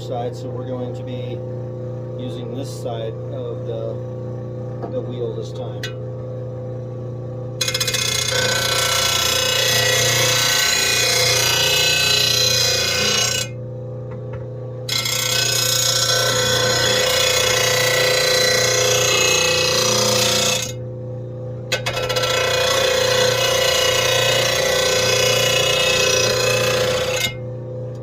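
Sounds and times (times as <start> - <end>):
blade grinding on grinding wheel: 7.6 - 13.6, 14.9 - 20.8, 21.7 - 27.4.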